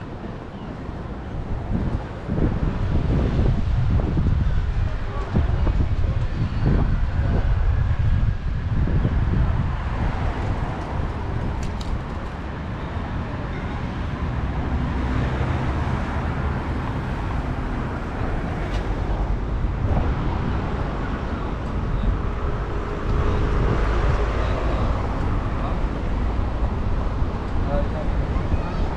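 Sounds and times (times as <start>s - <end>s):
traffic noise: 0.0s - 28.9s
wind buffeting the microphone: 0.0s - 28.9s.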